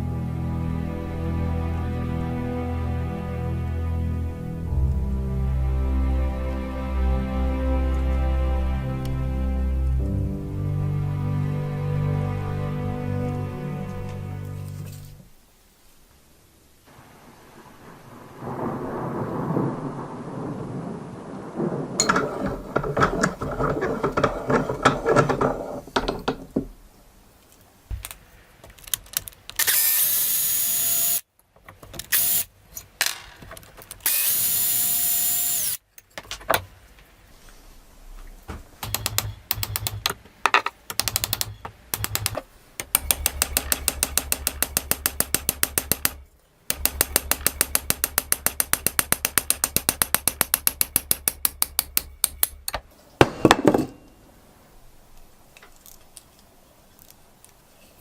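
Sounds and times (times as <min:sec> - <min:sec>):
power tool whining: 0:34.1 - 0:35.8
rapid even clicking: 0:38.8 - 0:40.2, 0:40.9 - 0:52.8.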